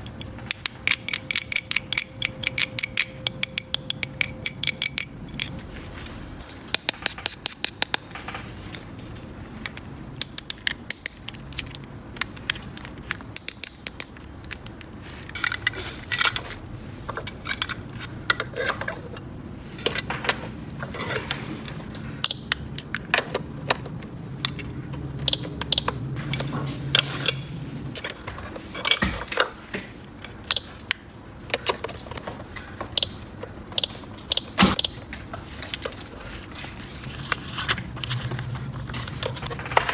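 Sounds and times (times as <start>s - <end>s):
plastic toy pieces clicking: 0.3s - 5.6s, 10.2s - 15.6s.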